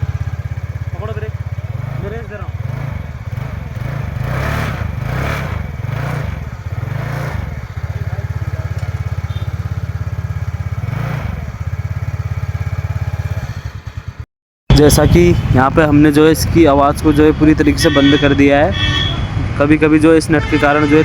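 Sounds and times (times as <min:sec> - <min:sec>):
scooter engine revving and idling: 0:00.0 - 0:15.6.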